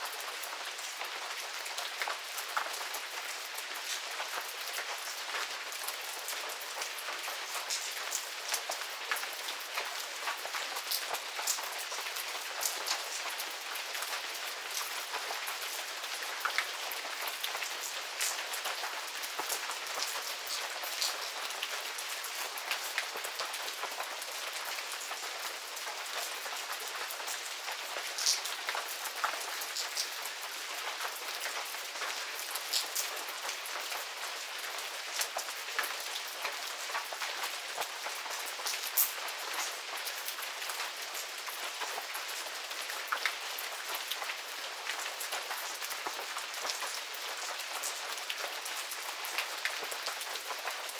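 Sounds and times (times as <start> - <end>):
rain falling: 0.0 - 50.9
raindrops pattering on surfaces: 0.0 - 50.9.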